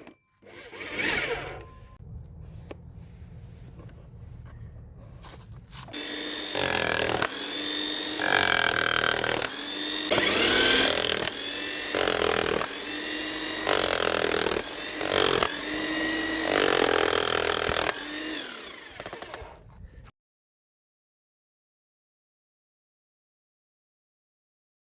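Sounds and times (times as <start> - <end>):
rotary hammer motor running: 0.4 - 1.9, 5.9 - 19.8
rotary hammer hammering: 5.9 - 19.6.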